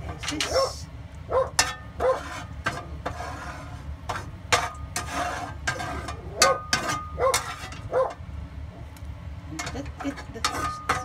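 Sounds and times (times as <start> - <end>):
cooking utensils clinking on cookware: 0.0 - 0.8, 1.5 - 3.3, 4.1 - 8.2, 9.6 - 11.0
dog barking: 0.5 - 2.2, 7.2 - 8.2.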